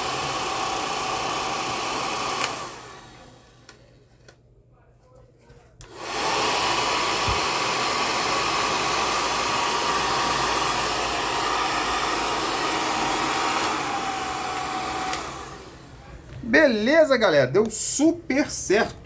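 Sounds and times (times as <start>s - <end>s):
hair dryer running with whine: 0.0s - 4.0s, 5.8s - 16.4s.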